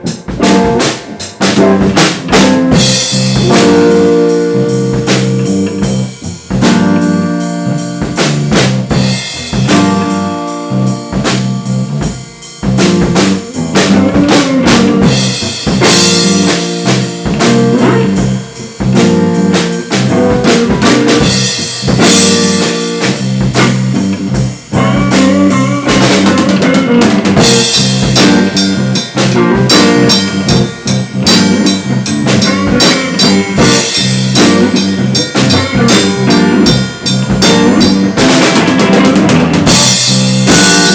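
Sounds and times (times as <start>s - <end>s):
drum kit beat: 0.0s - 40.9s
sustained instrument lines: 24.8s - 40.9s.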